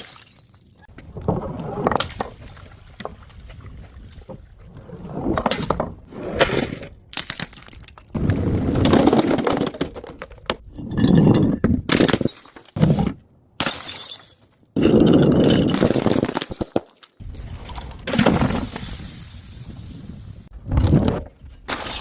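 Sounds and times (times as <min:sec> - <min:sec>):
glass bottles shattering: 0:00.0 - 0:00.8, 0:10.8 - 0:12.8, 0:13.6 - 0:17.2, 0:21.7 - 0:22.0.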